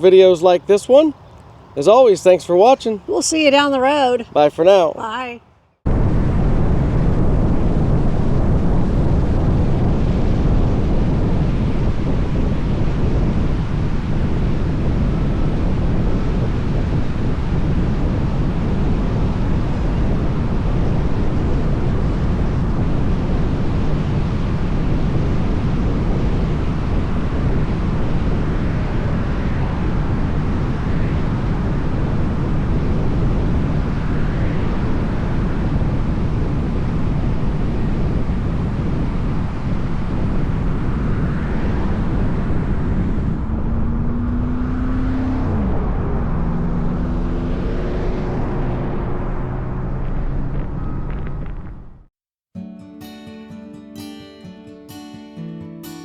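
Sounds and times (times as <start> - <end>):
faint vehicles passing: 0.0 - 5.8, 26.4 - 52.1
wind buffeting microphone: 0.0 - 52.1
vehicle engine: 39.0 - 52.1.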